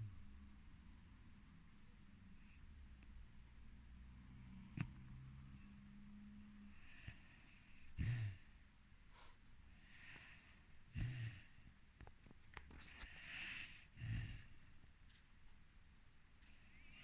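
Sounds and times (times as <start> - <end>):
puppy snoring: 6.6 - 11.6, 12.8 - 14.8
soft airy breath: 9.0 - 10.8.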